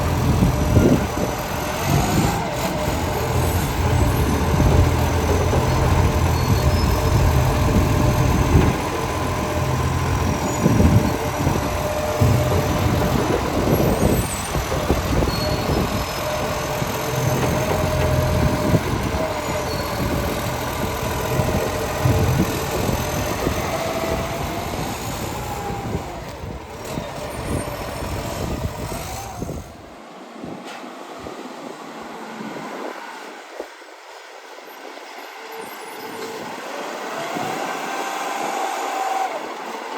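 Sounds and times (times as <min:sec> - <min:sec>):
garbage truck engine running: 0:00.0 - 0:29.9.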